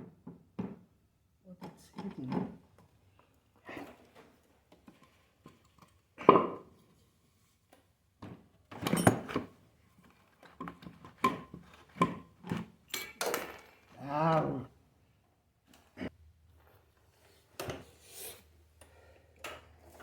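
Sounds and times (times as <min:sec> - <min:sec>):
metal clunks and clinks: 0:08.8 - 0:09.5.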